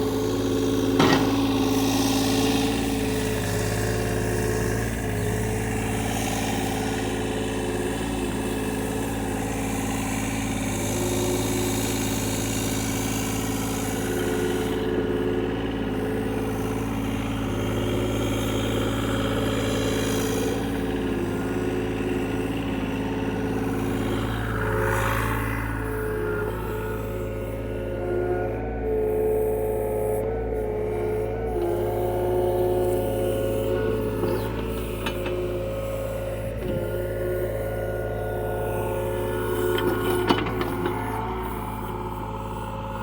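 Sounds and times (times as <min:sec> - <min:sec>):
excavator diesel engine running: 0:00.0 - 0:43.0.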